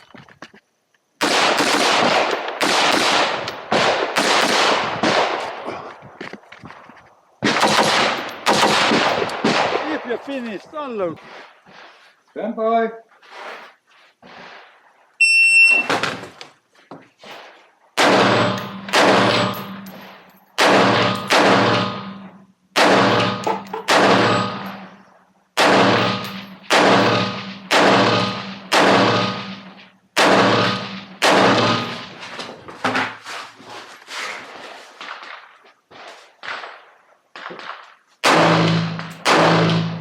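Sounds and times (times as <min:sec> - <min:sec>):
rifle shots cracking: 0:01.2 - 0:05.6, 0:07.4 - 0:10.5, 0:18.0 - 0:24.9, 0:25.6 - 0:32.2, 0:37.4 - 0:40.0
shot timer beep: 0:15.2 - 0:15.9.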